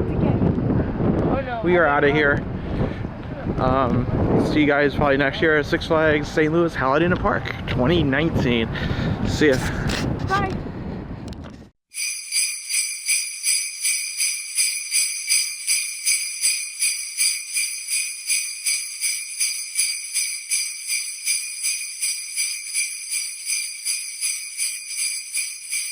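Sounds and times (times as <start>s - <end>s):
sleigh bells shaken: 11.9s - 25.9s.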